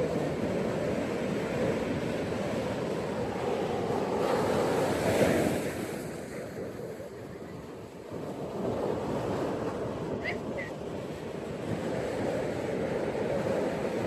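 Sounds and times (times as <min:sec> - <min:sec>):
ocean surf on beach: 0:00.0 - 0:14.0.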